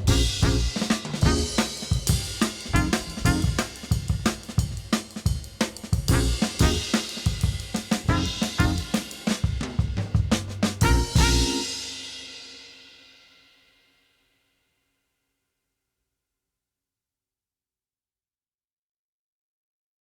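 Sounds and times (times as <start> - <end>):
drum kit beat: 0.0 - 12.8
pitched instruments: 10.8 - 12.2.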